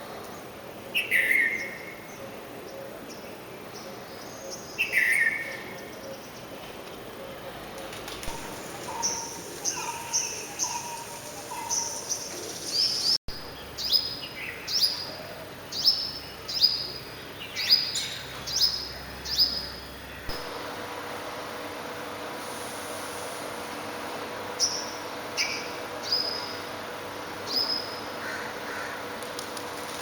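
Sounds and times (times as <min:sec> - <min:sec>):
small birds chirping: 0:08.6 - 0:15.0
steady hiss: 0:22.3 - 0:23.8.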